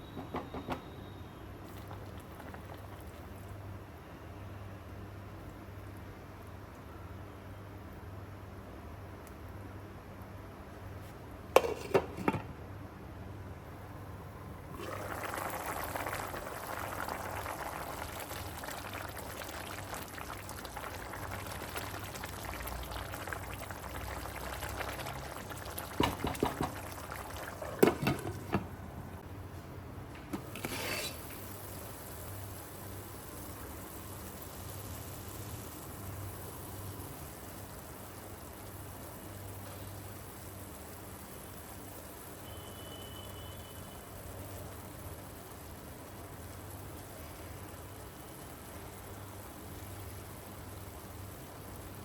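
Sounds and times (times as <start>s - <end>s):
liquid pouring: 14.6s - 29.2s.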